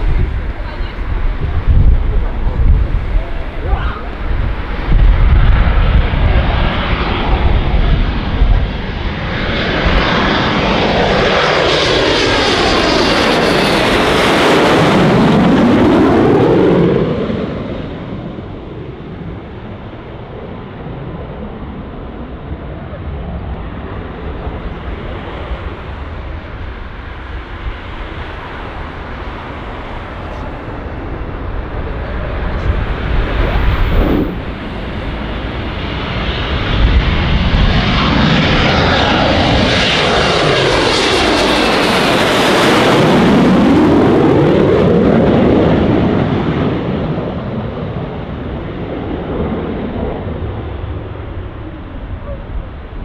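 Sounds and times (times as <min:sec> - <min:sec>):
low steady rumble: 0:00.0 - 0:09.2
jet engines whooshing past: 0:00.0 - 0:53.0.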